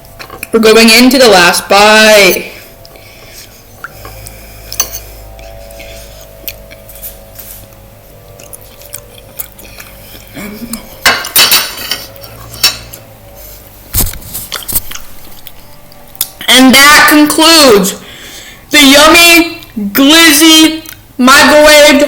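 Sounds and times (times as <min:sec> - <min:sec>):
fork scraping a plate: 0:03.0 - 0:07.8, 0:08.4 - 0:15.8
cutlery clattering: 0:11.0 - 0:12.9.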